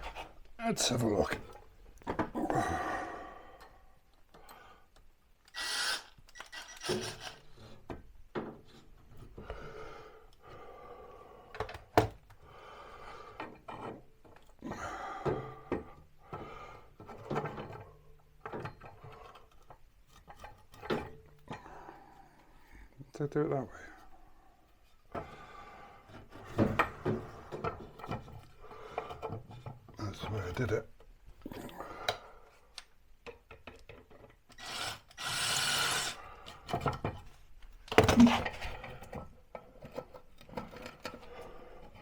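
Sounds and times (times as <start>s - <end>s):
wood and tools scraping: 33.9s - 42.0s.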